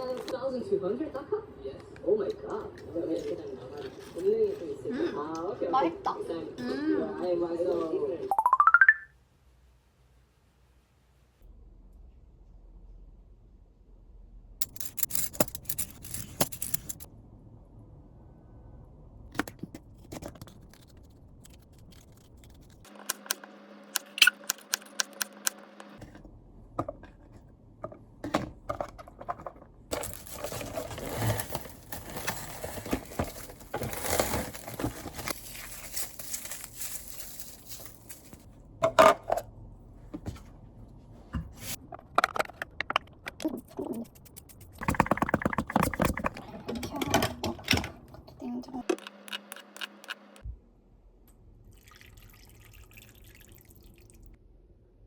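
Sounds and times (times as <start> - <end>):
objects being handled: 14.6 - 17.1, 24.0 - 39.4.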